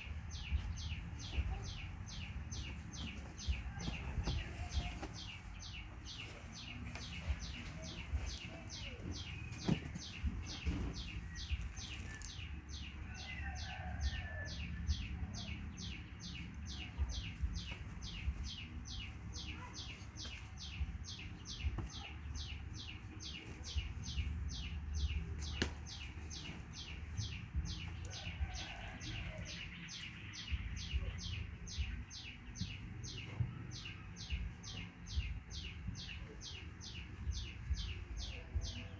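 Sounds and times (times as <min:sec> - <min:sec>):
low background rumble: 0:14.0 - 0:38.9.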